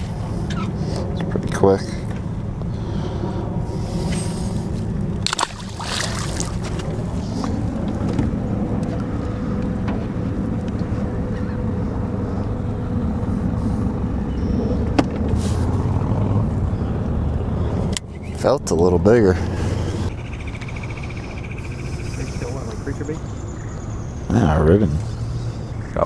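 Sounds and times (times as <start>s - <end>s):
boat motor running: 4.7s - 20.1s.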